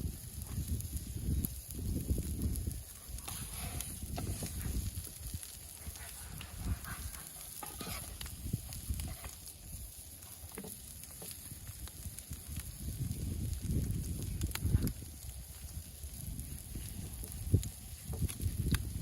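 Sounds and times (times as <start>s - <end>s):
food sizzling: 0.0s - 19.0s
utensil clicking and scraping pan: 3.1s - 4.8s, 5.8s - 9.5s.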